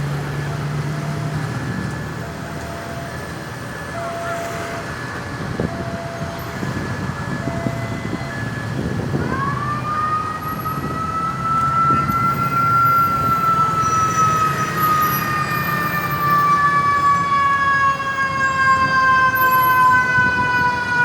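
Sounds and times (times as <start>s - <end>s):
emergency vehicle siren wailing: 0.0s - 21.0s
traffic rumble: 0.0s - 21.0s.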